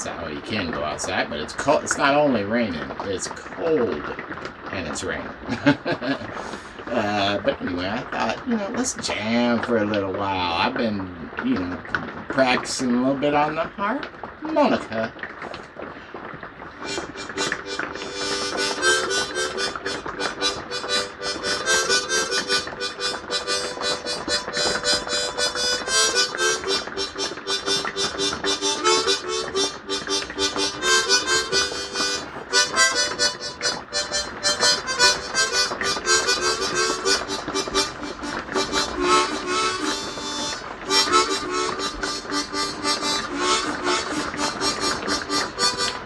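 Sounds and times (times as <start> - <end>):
harmonica chords: 16.8 - 46.0.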